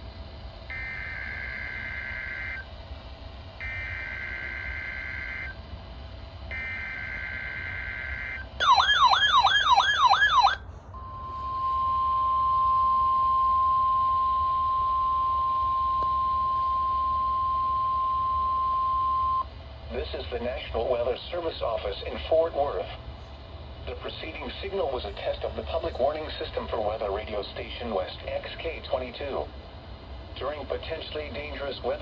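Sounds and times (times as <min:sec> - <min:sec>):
fast warbling alarm: 0:00.7 - 0:02.7, 0:03.6 - 0:05.6, 0:06.5 - 0:19.4
steady warning alarm tone: 0:00.7 - 0:02.7, 0:03.6 - 0:05.6, 0:06.5 - 0:19.5.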